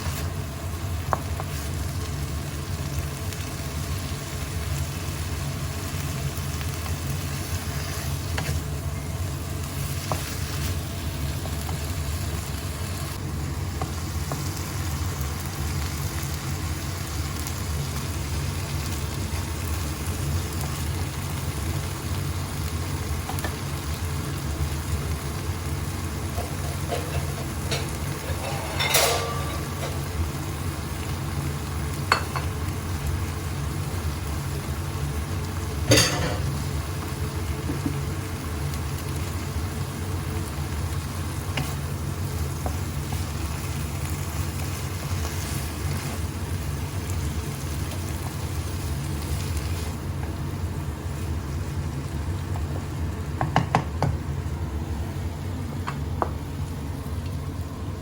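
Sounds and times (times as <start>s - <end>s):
food sizzling in a pan: 0.0s - 55.2s
utensil scraping and clinking pan: 26.4s - 30.0s.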